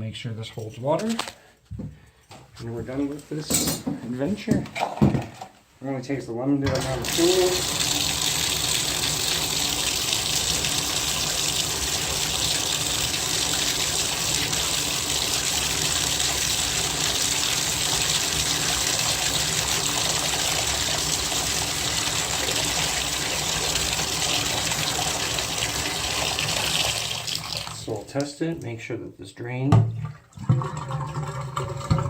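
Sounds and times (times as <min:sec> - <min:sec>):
faucet running into bathtub: 0:06.7 - 0:28.3, 0:29.7 - 0:32.0.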